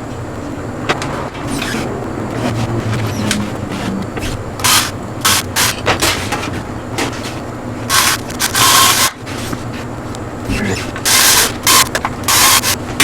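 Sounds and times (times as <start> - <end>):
low steady hum: 0.0 - 13.0
scraping and rustling handling: 1.0 - 5.0, 5.7 - 7.5.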